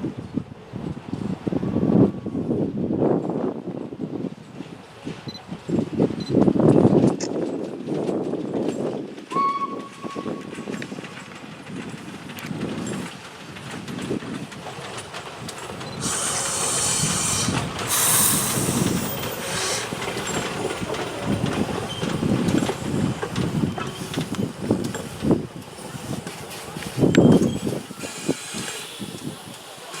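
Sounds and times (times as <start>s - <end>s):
brief whistle tone: 9.3s - 10.6s
steam locomotive hissing steam: 15.7s - 30.0s.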